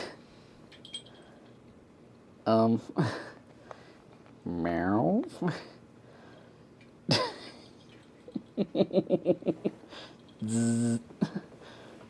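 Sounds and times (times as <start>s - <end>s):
falling vocal call: 10.4s - 11.1s
short pitched vocal pulses: 10.4s - 11.2s
low vocal buzz: 10.4s - 11.4s.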